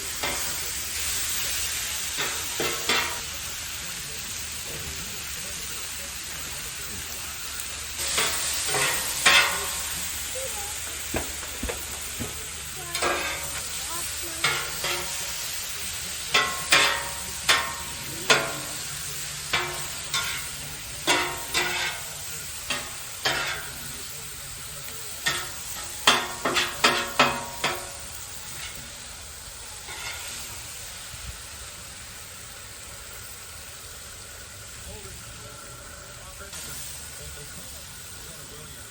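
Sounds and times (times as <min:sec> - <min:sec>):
utensil clacking against pan: 0:00.0 - 0:03.4, 0:08.0 - 0:10.2, 0:10.9 - 0:13.8, 0:14.4 - 0:23.9, 0:24.8 - 0:29.0, 0:29.8 - 0:30.5
food sizzling in a frying pan: 0:00.0 - 0:38.9
utensil scraping a pan: 0:16.3 - 0:23.7, 0:29.9 - 0:30.4.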